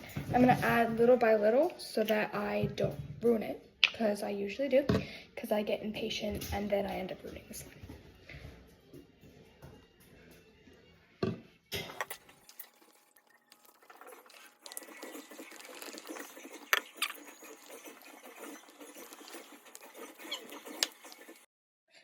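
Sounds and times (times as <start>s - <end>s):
sticky liquid stirred in bowl: 12.0s - 21.5s.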